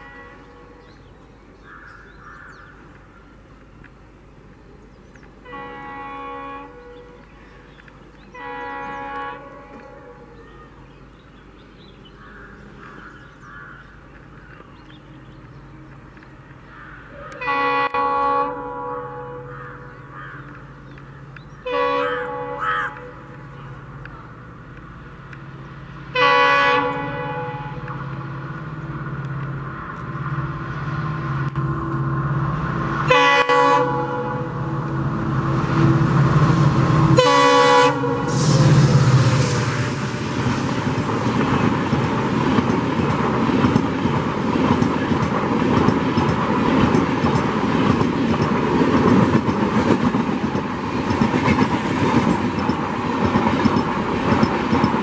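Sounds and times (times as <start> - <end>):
train horn blasts: 0.0 - 0.9, 5.4 - 7.3, 8.3 - 10.5, 17.2 - 19.6, 21.6 - 23.3, 26.1 - 28.0, 33.0 - 36.3, 36.9 - 40.4
train wheels clattering on rails: 39.5 - 55.0.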